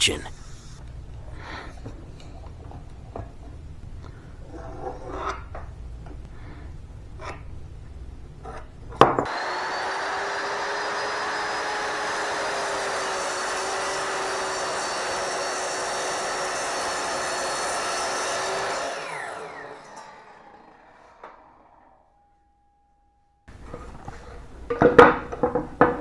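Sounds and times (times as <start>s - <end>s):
power tool running on wood: 9.3s - 21.0s.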